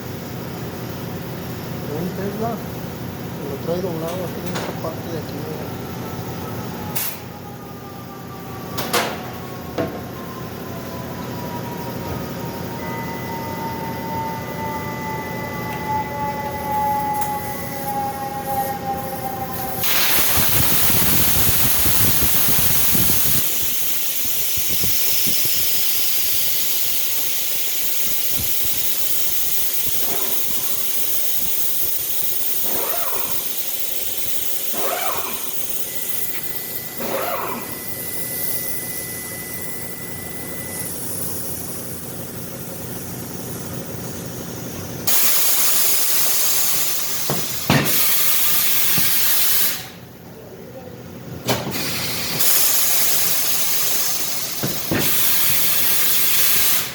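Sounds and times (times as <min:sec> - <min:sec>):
machine hum: 0:00.0 - 0:48.8
loud hiss: 0:18.7 - 0:36.5, 0:45.0 - 0:50.0, 0:51.5 - 0:56.9.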